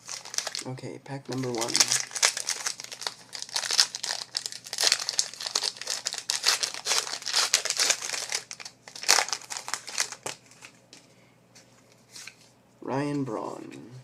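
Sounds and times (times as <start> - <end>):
foil wrapper tearing and crinkling: 0.0 - 0.6, 1.3 - 10.7.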